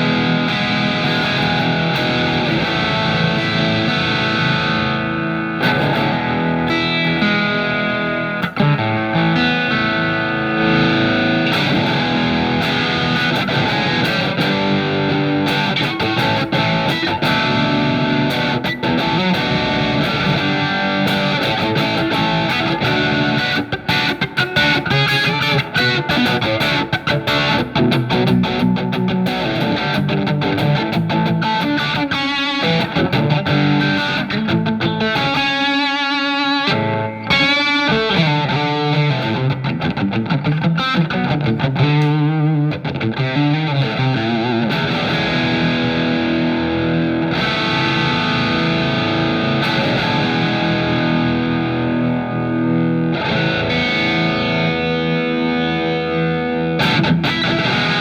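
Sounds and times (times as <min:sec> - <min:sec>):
electric guitar: 0:00.0 - 0:58.0.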